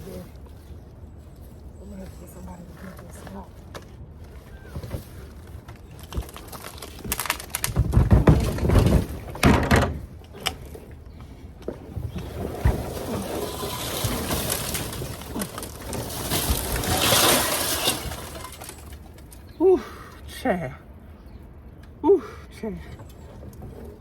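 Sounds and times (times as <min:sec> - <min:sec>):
planter scraping and knocking: 0:04.4 - 0:10.9, 0:11.6 - 0:19.1.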